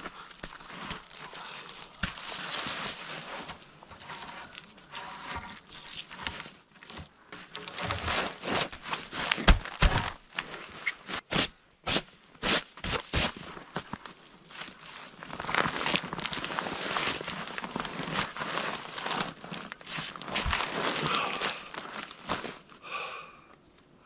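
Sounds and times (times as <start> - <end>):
short crunches and knocks: 0.0 - 14.0, 18.0 - 22.7
rustling and crinkling: 0.0 - 22.8
dull thumps: 9.3 - 10.2.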